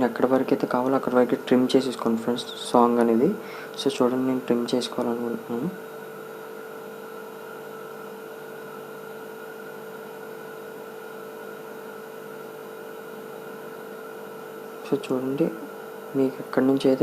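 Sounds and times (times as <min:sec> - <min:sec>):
electrical hum with held tone: 0:00.0 - 0:17.0.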